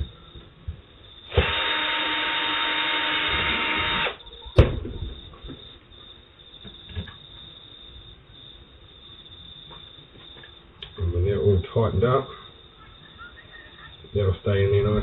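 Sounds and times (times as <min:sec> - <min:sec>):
power drill driving screw: 0:01.3 - 0:04.2.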